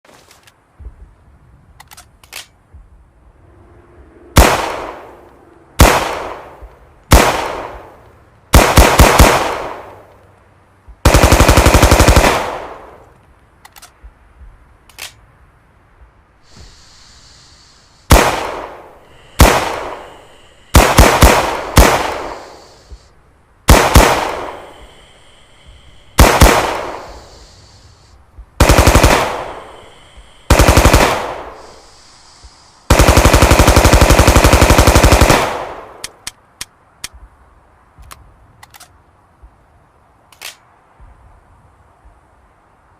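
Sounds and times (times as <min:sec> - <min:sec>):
submachine gun firing: 0:05.8 - 0:06.5, 0:07.1 - 0:07.9, 0:08.5 - 0:10.0, 0:11.0 - 0:13.0, 0:18.1 - 0:20.1, 0:20.7 - 0:22.7, 0:23.7 - 0:24.7, 0:26.2 - 0:27.5, 0:28.6 - 0:29.8, 0:30.5 - 0:31.8, 0:32.9 - 0:36.0
gunshot echoes: 0:05.8 - 0:08.0, 0:18.1 - 0:22.7, 0:23.7 - 0:24.8, 0:26.2 - 0:27.4, 0:28.6 - 0:29.8, 0:30.5 - 0:31.9.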